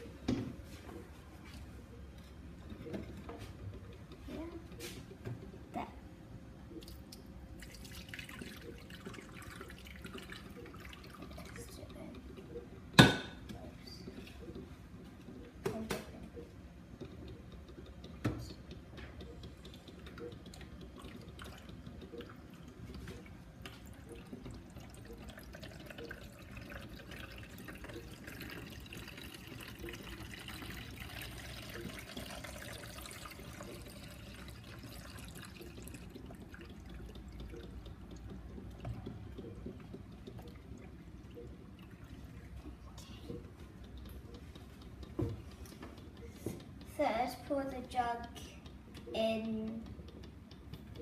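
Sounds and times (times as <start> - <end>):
water pouring and trickling: 6.7 - 12.6, 18.1 - 45.8.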